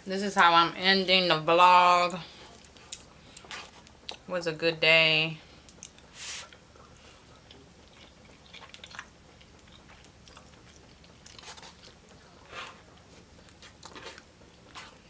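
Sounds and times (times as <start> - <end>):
person chewing food: 2.3 - 4.3, 5.6 - 15.0.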